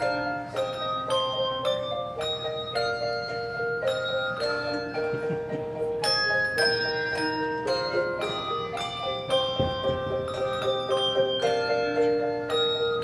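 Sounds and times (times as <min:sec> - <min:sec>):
handbell choir playing: 0:00.0 - 0:13.0.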